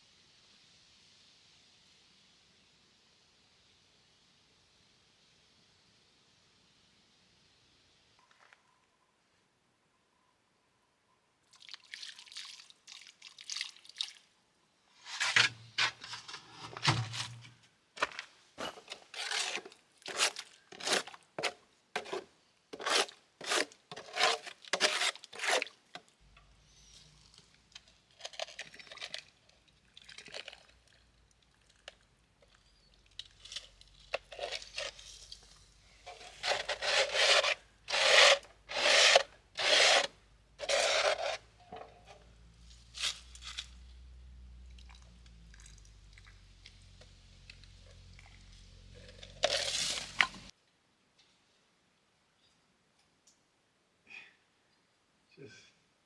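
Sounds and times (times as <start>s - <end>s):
trowel scraping mortar on stone: 15.0s - 17.4s, 18.0s - 25.8s, 34.1s - 35.5s, 36.1s - 42.2s.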